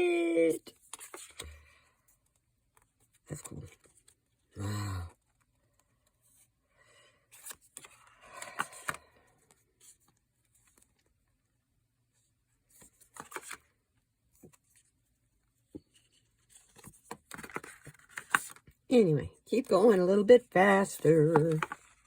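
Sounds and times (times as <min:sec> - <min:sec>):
cards rustling and sliding: 0:00.3 - 0:01.6, 0:07.3 - 0:11.2, 0:12.7 - 0:13.8, 0:15.9 - 0:18.7, 0:21.0 - 0:22.0.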